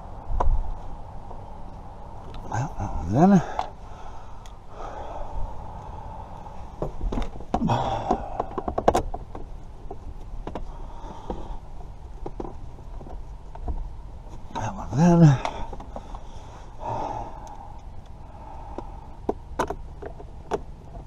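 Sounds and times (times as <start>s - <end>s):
faint steady hum: 0.0s - 21.0s
person grunting: 7.6s - 8.6s.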